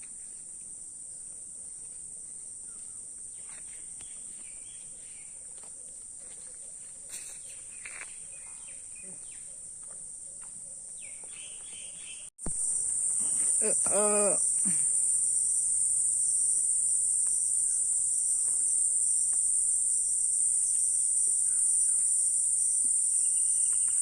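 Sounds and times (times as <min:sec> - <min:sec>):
insects trilling: 0:02.6 - 0:24.0
bird chirps: 0:10.3 - 0:12.3.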